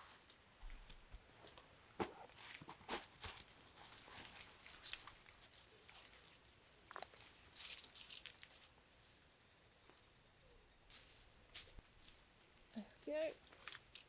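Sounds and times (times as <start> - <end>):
straps rustling and scraping: 1.4 - 9.2, 10.9 - 14.0.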